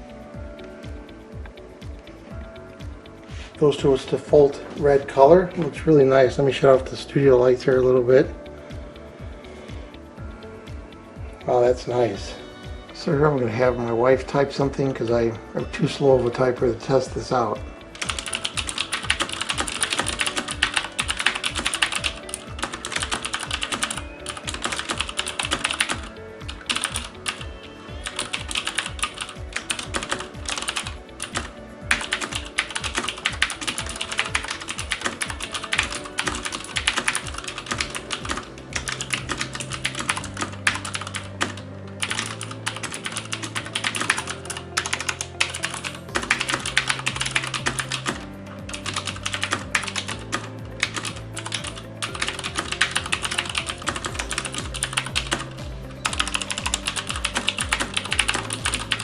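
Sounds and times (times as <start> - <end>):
background music with bass: 0.0 - 59.0
clicky mechanical keyboard typing: 18.0 - 27.4, 28.0 - 55.4, 56.0 - 59.0.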